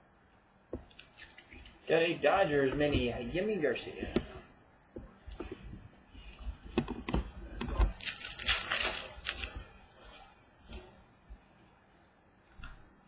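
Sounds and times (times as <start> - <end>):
foil wrapper rustling: 7.9 - 10.2.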